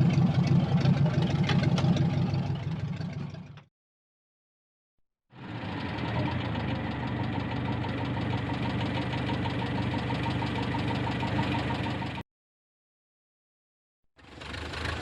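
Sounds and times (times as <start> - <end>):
car engine running: 0.0 - 3.7, 5.4 - 12.2.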